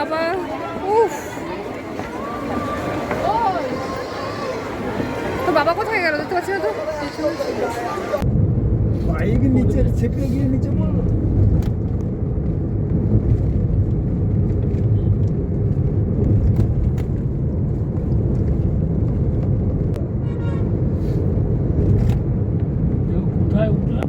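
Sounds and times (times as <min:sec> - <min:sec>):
faint voices: 0:00.0 - 0:08.2
vehicle engine and road rumble: 0:00.0 - 0:24.0.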